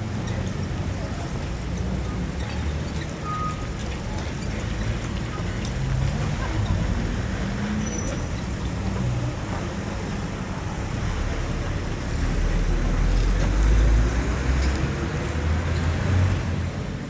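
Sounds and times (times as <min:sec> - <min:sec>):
road noise: 0:00.0 - 0:17.0
vehicle engine rumble: 0:00.0 - 0:17.0.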